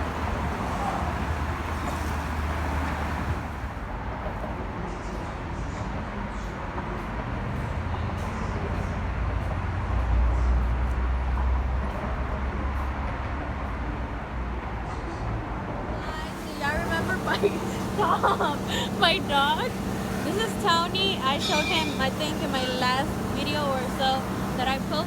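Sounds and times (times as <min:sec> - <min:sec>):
car engine and road rumble: 0:00.0 - 0:03.9, 0:16.0 - 0:25.0.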